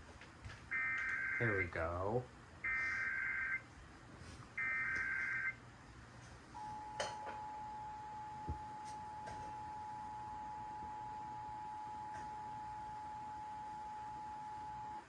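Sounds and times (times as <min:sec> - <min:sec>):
two-tone attention signal: 0:06.6 - 0:12.2.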